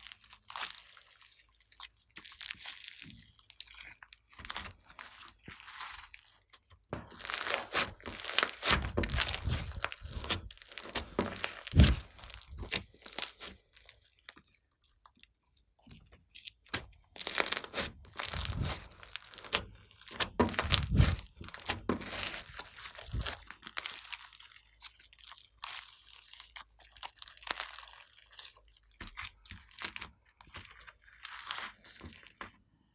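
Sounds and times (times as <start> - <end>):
slime crackling and popping: 0.1 - 15.2, 15.8 - 32.5.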